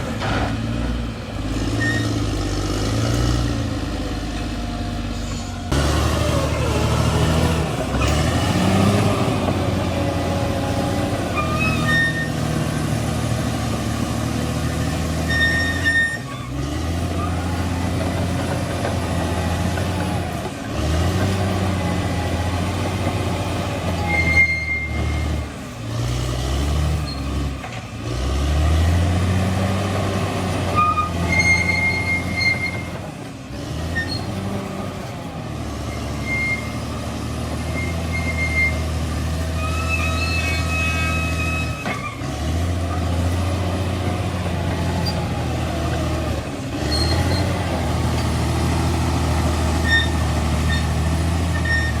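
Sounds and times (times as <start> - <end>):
bulldozer diesel engine under load: 0.0 - 52.0
short high-pitched squeaks: 1.7 - 2.4, 11.3 - 12.6, 15.2 - 16.6, 23.9 - 25.5, 27.0 - 27.4, 30.7 - 33.0, 33.9 - 34.4, 35.9 - 36.9, 37.7 - 42.3, 46.8 - 47.6, 49.7 - 52.0.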